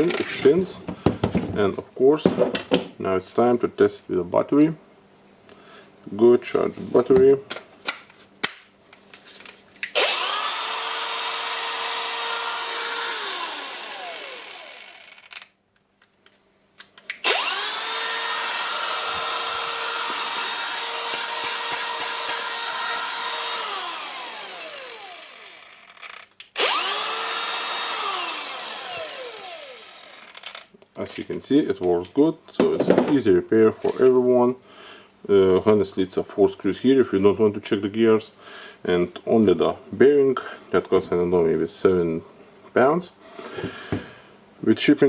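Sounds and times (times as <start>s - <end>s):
angle grinder whining: 9.8s - 15.5s, 17.1s - 30.7s.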